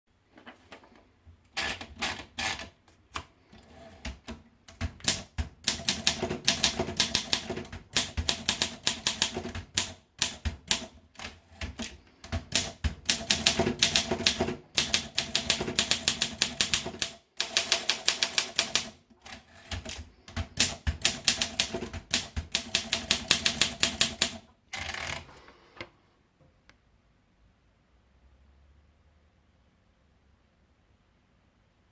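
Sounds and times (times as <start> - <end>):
typewriter keys clacking: 4.7 - 25.2.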